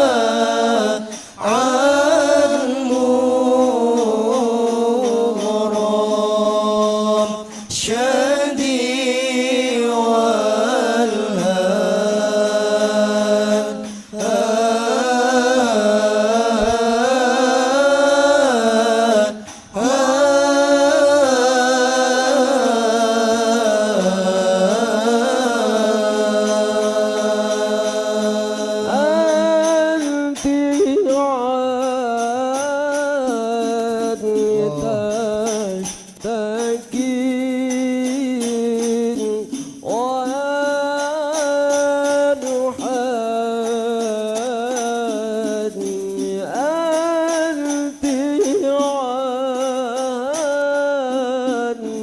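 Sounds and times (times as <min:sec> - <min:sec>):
short breaths: 0:01.1 - 0:01.4
person chanting melodic phrases: 0:34.2 - 0:35.6.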